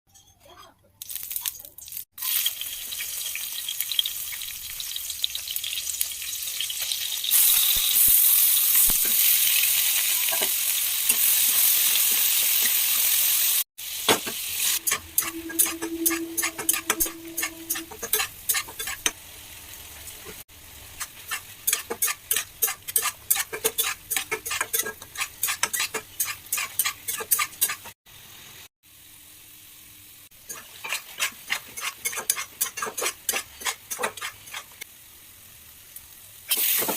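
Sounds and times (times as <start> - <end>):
food sizzling in hot oil: 1.0 - 36.9
spatula scraping a pan: 14.8 - 19.1, 21.0 - 28.0, 30.5 - 34.8.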